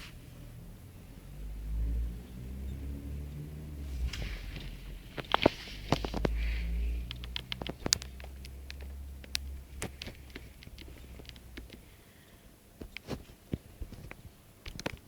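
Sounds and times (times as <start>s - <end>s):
low rumble: 0.2s - 11.7s
sharp clicks and taps: 4.1s - 11.9s, 12.8s - 15.0s.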